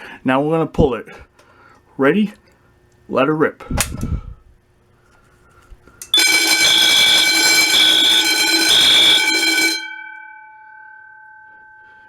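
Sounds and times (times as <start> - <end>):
alarm horn blasts: 6.1 - 10.0
fire alarm bell ringing: 6.1 - 12.0.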